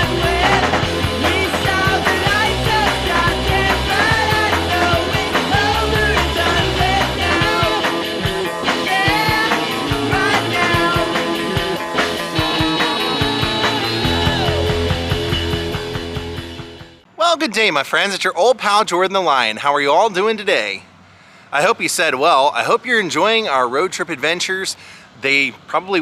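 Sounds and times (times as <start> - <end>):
rock music with guitar: 0.0 - 17.0.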